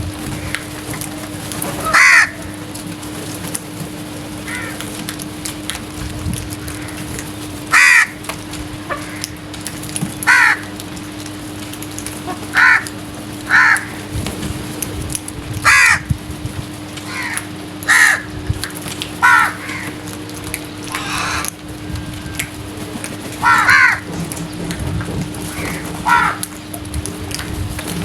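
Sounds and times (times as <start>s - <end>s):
steady low hum: 0.0s - 28.0s
crows cawing: 1.8s - 2.6s, 4.4s - 4.9s, 6.6s - 9.5s, 10.2s - 10.8s, 12.2s - 14.1s, 15.6s - 16.2s, 17.0s - 18.4s, 19.2s - 20.2s, 20.8s - 22.6s, 23.3s - 24.1s, 25.4s - 26.6s.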